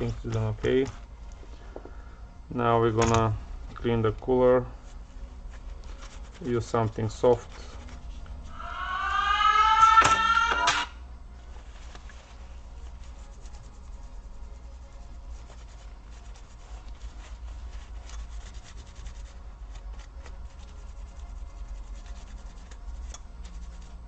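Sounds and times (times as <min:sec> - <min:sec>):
steady low hum: 0:00.0 - 0:24.0
scratchy rubbing on metal heatsink: 0:05.4 - 0:08.6, 0:11.5 - 0:24.0.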